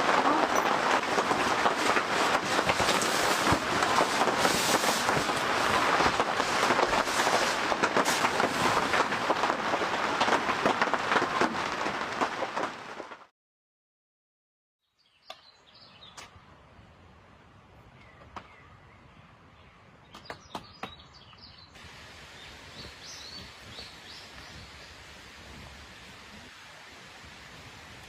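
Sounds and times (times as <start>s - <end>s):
heavy rain on a close surface: 0.0s - 13.3s, 21.8s - 28.0s.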